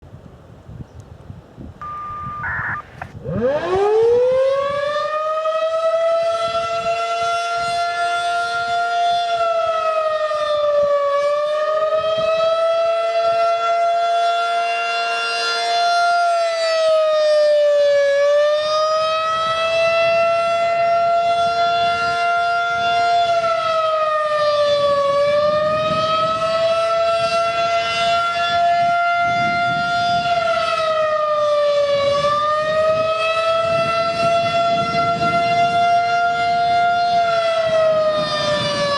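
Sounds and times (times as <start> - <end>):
rotating warning siren steady tone: 1.8 - 38.9.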